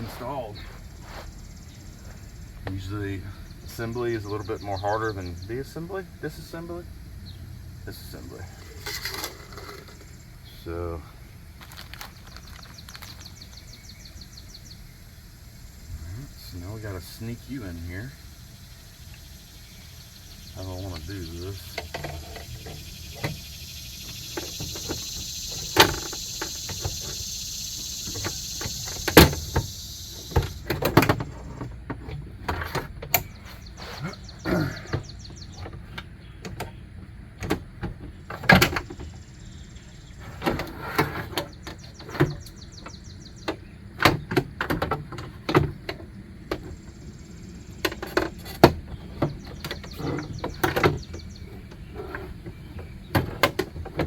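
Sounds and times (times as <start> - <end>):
steady high hiss: 0.0 - 37.4
metal clanks clicks and knocks: 21.7 - 23.4, 47.8 - 54.0.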